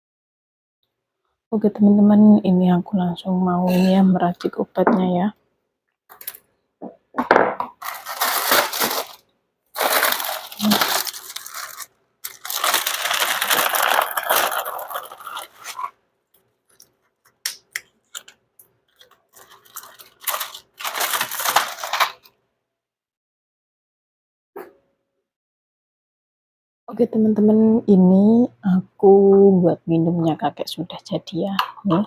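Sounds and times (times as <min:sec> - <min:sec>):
tablets being crushed and scraped: 0:07.7 - 0:09.2, 0:09.8 - 0:15.9, 0:16.7 - 0:22.3.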